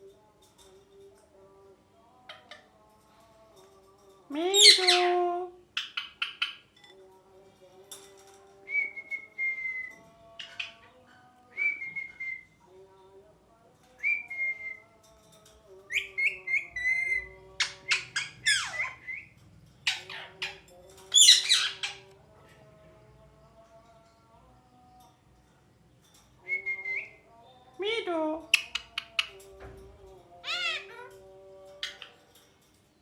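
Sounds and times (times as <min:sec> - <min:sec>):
parakeet whistles and squawks: 0:04.5 - 0:05.1, 0:15.9 - 0:19.3, 0:19.9 - 0:22.1, 0:30.4 - 0:31.2.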